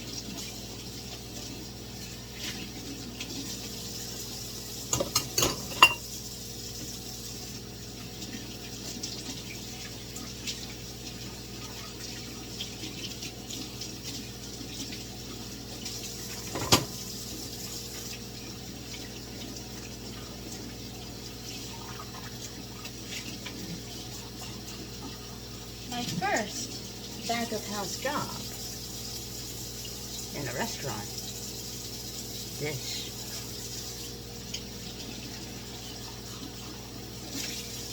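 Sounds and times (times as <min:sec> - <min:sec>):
dishes clinking: 0:04.9 - 0:06.1, 0:16.4 - 0:17.0
tap running into a sink: 0:04.9 - 0:06.1, 0:15.8 - 0:17.1.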